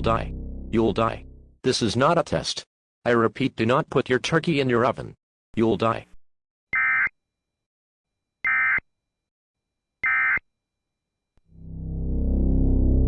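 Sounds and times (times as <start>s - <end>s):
low rumble: 0.0s - 1.6s, 11.5s - 13.0s.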